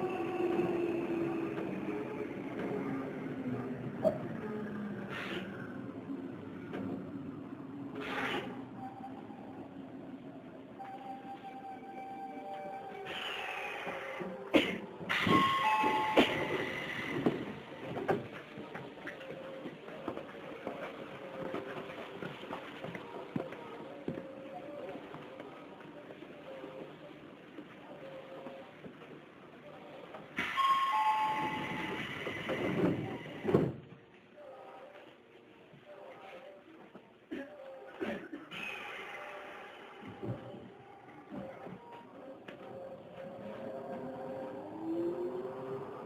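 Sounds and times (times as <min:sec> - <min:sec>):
train door chime: 0:15.1 - 0:17.0, 0:30.4 - 0:32.5.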